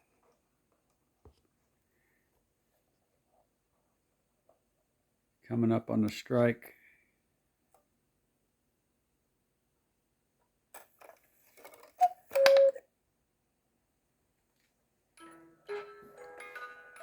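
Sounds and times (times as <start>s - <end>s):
music box playing: 12.0s - 12.8s, 15.2s - 17.0s
two-note cuckoo call: 12.0s - 12.8s.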